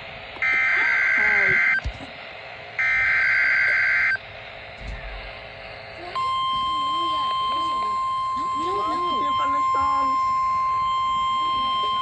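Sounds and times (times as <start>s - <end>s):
digital data signal bursts: 0.4s - 1.8s, 2.8s - 4.2s, 6.1s - 12.0s.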